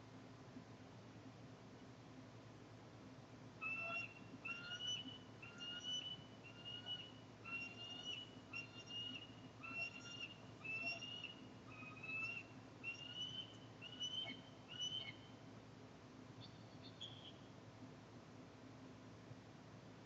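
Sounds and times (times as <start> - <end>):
eagle whistled calls: 3.6 - 15.3, 16.4 - 17.4.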